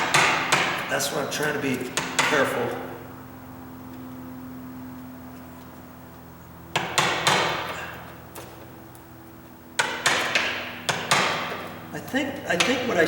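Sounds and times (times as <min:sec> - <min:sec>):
blade knocking into wood: 0:06.7 - 0:08.7, 0:09.8 - 0:11.8.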